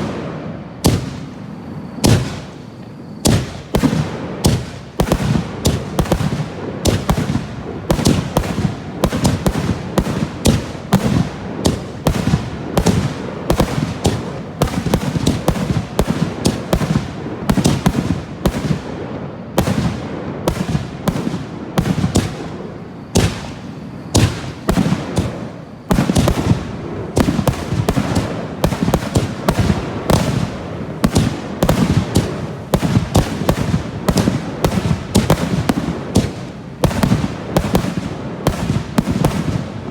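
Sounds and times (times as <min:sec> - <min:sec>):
fireworks shells bursting: 0:00.0 - 0:39.9.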